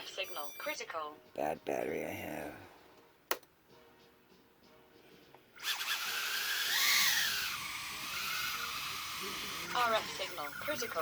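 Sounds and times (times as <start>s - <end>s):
drone motors whining: 5.6s - 11.0s.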